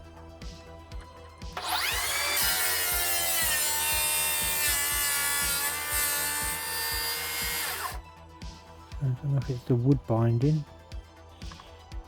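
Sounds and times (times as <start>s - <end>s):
background music with steady beat: 0.0s - 12.0s
circular saw cutting wood: 1.6s - 8.0s.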